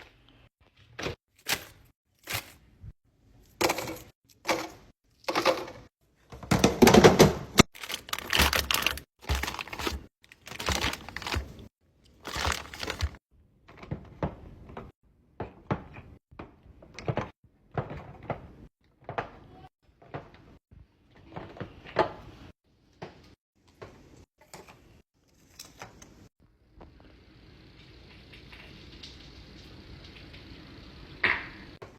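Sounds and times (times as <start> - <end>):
items knocking and clattering: 3.5 - 20.6
packaging rustling: 7.6 - 13.2.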